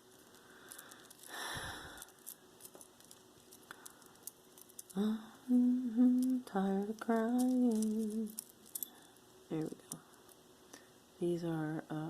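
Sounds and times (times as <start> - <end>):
metal earrings clinking: 0.0 - 10.5
woman humming: 4.9 - 8.4.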